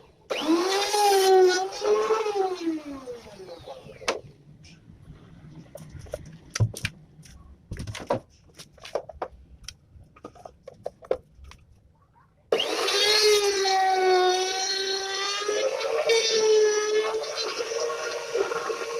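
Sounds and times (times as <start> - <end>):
trim router whining: 0.3 - 4.2, 12.5 - 18.9
handling knocks and clicks: 5.7 - 11.9.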